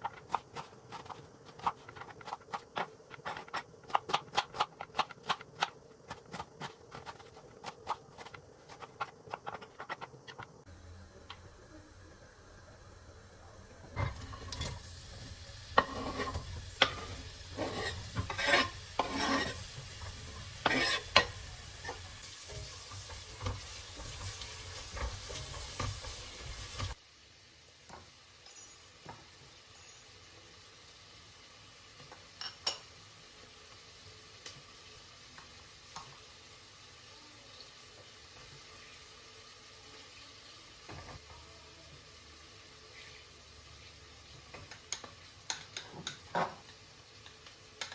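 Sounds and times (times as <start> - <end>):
spoon stirring and knocking pot: 0.0 - 10.5, 15.8 - 22.0, 44.4 - 47.9
food sizzling in a pot: 0.0 - 47.9.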